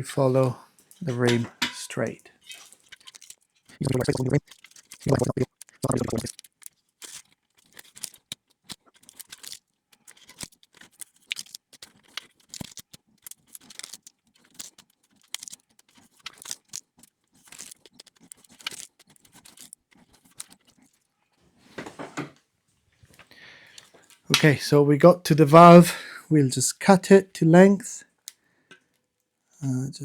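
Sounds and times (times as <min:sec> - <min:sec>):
sticky tape crackling and peeling: 0:02.5 - 0:21.1.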